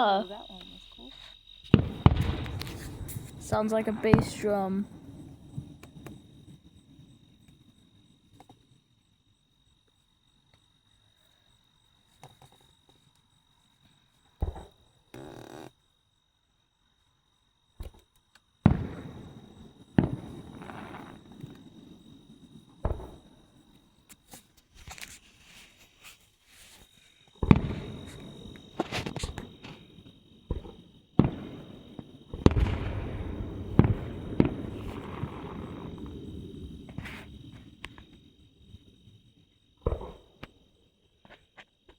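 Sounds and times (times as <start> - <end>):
fireworks booming: 1.7 - 6.6, 18.6 - 23.6, 27.4 - 38.3, 39.8 - 40.6.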